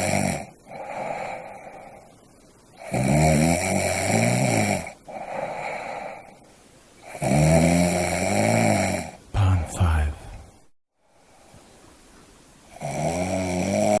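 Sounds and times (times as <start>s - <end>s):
person snoring: 0.0s - 2.1s, 2.8s - 6.4s, 7.0s - 10.5s, 12.7s - 14.0s
soft breathing: 0.6s - 2.8s, 5.0s - 7.1s, 10.0s - 12.3s.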